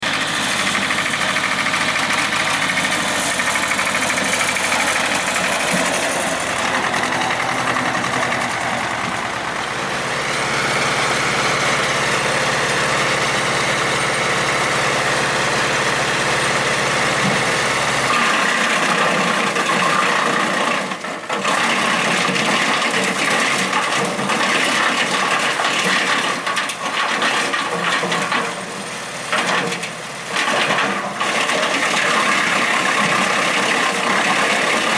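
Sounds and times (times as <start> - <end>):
wood chipper running: 0.0 - 34.9.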